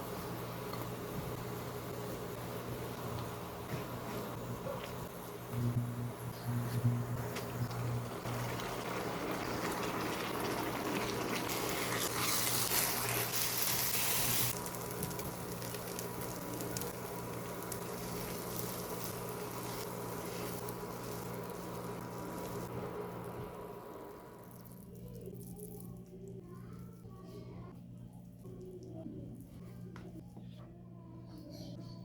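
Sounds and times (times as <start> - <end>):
steady low hum: 0.0 - 10.4, 14.5 - 32.0
food sizzling in a pan: 8.0 - 24.9.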